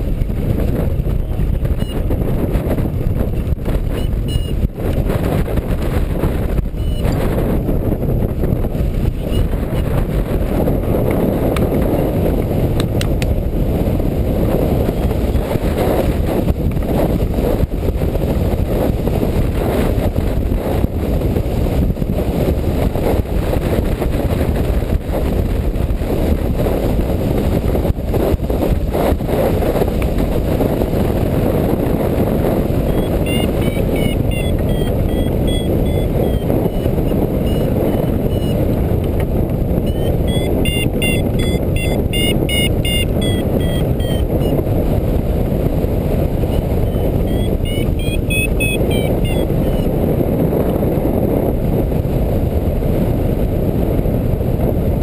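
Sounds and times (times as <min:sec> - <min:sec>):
wind buffeting microphone: 0:00.0 - 0:55.0
short electronic beeps: 0:01.8 - 0:02.0, 0:03.9 - 0:04.6, 0:06.8 - 0:07.2, 0:32.9 - 0:38.6, 0:39.9 - 0:44.6, 0:46.5 - 0:49.9.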